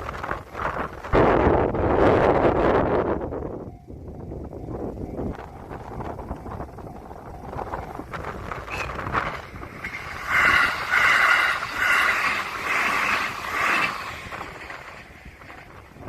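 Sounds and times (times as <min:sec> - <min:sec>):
wind rumble on microphone: 0:00.0 - 0:16.0
train wheels clattering on rails: 0:04.8 - 0:16.0.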